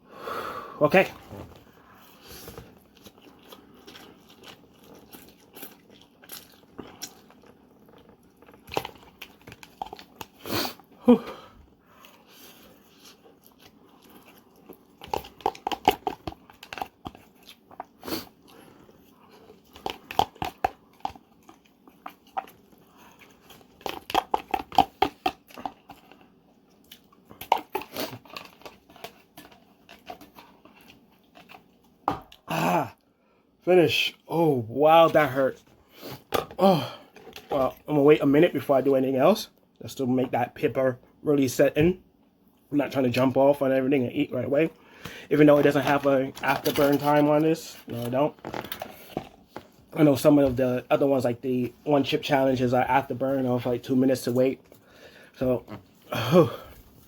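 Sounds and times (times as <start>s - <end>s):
person chewing noodles: 1.3s - 33.4s.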